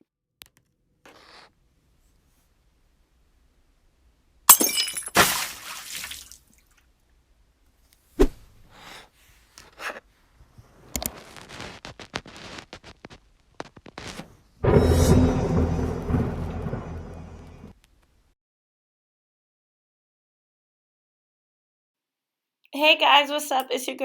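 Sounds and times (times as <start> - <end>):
glass breaking crash: 4.5 - 5.7.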